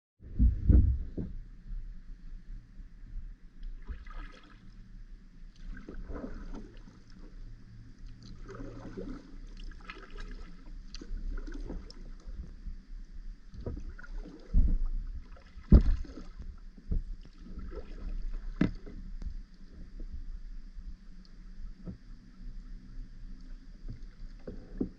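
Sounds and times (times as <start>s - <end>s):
paddle strokes splashing in water: 3.7s - 4.8s, 5.5s - 12.6s, 13.5s - 19.9s.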